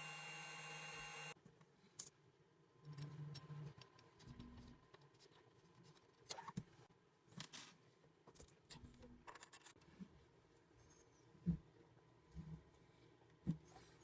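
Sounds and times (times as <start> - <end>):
small metal parts scraping and clicking: 8.7 - 9.8.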